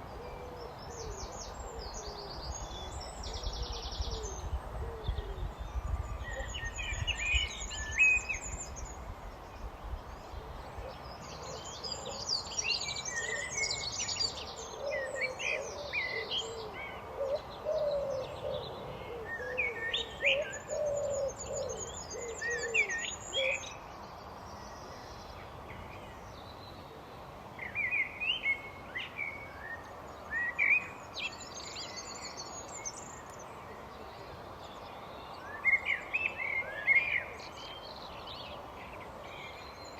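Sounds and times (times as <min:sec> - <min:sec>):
outdoor background noise: 0:00.0 - 0:39.9
songbirds singing: 0:00.0 - 0:39.9.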